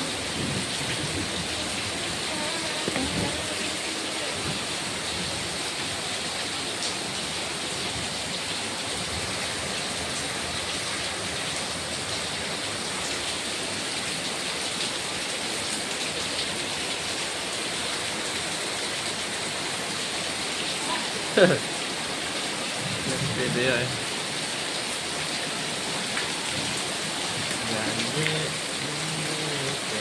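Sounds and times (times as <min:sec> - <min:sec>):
heavy rain: 0:00.0 - 0:30.0.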